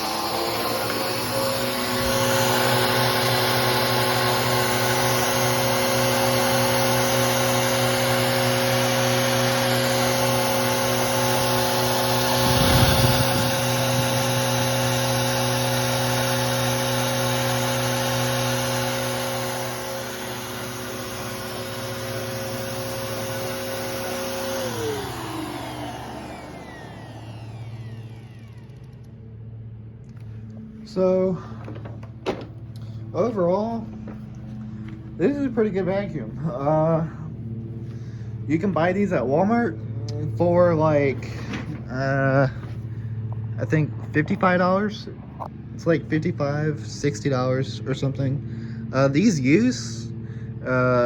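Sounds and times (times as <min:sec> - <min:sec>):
vacuum bump: 0:00.0 - 0:05.5, 0:07.7 - 0:14.9, 0:30.2 - 0:36.0, 0:40.6 - 0:43.0
vacuum cleaner motor whine: 0:00.0 - 0:46.0
vacuum motor winding down: 0:00.0 - 0:46.4, 0:49.0 - 0:51.0.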